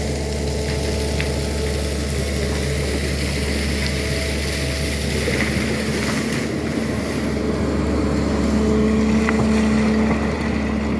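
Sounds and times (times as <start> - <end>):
excavator diesel engine running: 0.0 - 10.9.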